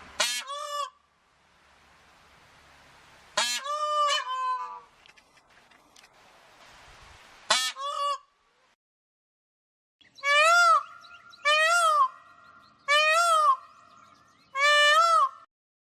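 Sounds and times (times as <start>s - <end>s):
bird honking: 0.2s - 1.0s, 3.4s - 4.9s, 10.2s - 15.5s.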